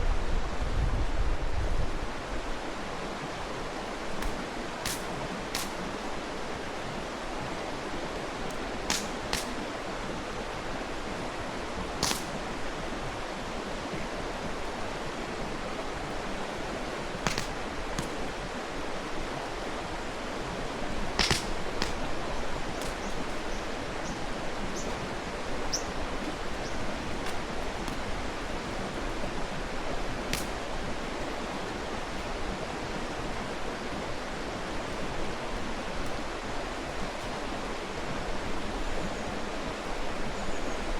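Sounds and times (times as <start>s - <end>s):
stream rushing: 0.1s - 40.9s
campfire popping and crackling: 4.0s - 6.7s, 8.2s - 9.9s, 11.8s - 12.9s, 15.8s - 33.3s.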